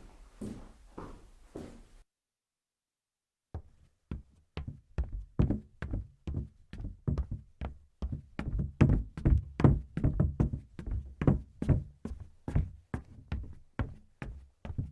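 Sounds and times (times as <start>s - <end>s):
footsteps on hollow wooden floor: 0.4s - 1.9s.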